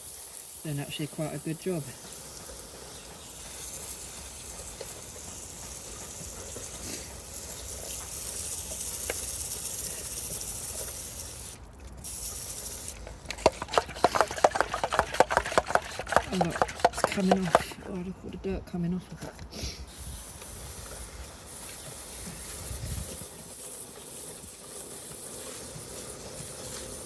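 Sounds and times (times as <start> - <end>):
water spraying with a hiss: 0.0 - 17.7, 19.5 - 27.0
rapid irregular clicks and spatters: 0.1 - 17.9.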